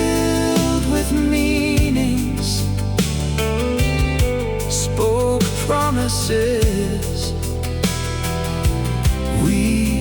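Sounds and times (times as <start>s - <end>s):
person singing: 0.0s - 3.2s, 4.6s - 7.6s, 9.3s - 10.0s
alternative rock band playing: 0.0s - 10.0s.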